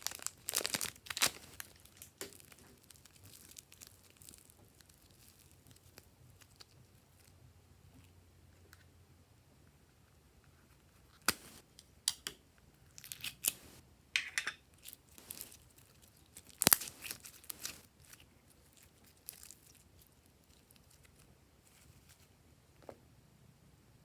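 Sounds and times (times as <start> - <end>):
slime squished with pops: 16.4 - 17.8.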